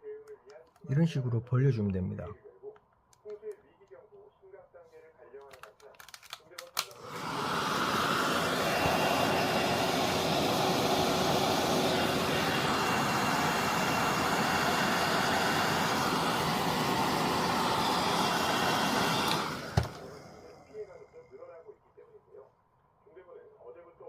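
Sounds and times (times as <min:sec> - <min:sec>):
hair dryer blowing: 0:06.8 - 0:20.8.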